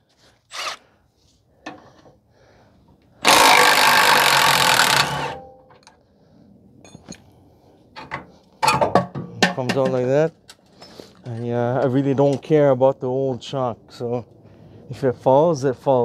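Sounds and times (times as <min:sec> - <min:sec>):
impact wrench running: 0:03.2 - 0:05.4.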